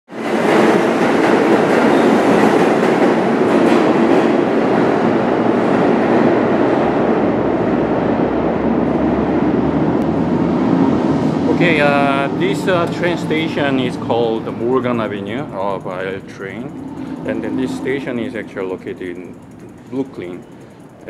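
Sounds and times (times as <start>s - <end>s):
wheels clicking over rail joints: 0.1s - 6.8s, 11.4s - 21.0s
train wheels rumbling on rails: 0.1s - 21.0s.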